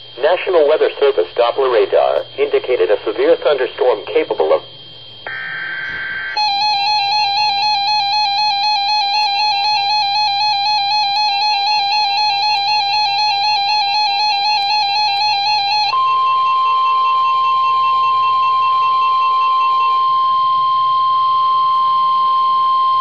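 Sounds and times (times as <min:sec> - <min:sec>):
warbling electronic attention tone: 0:05.3 - 0:22.9.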